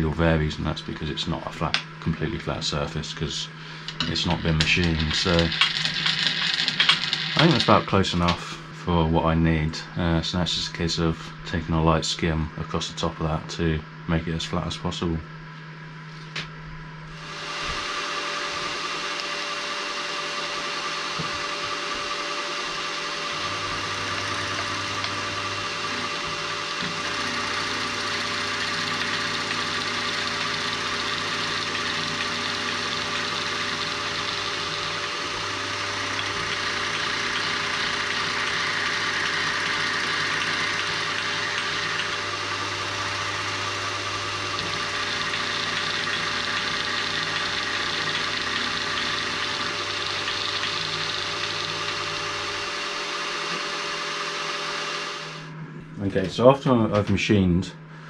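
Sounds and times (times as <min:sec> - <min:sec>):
milling machine cutting metal: 0:03.9 - 0:08.4, 0:17.2 - 0:55.5.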